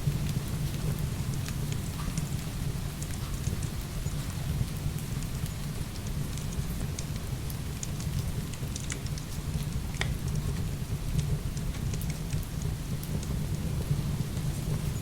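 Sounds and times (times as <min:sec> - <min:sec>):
heavy rain with low rumble: 0:00.0 - 0:15.0
firewood crackling and popping: 0:06.5 - 0:13.6.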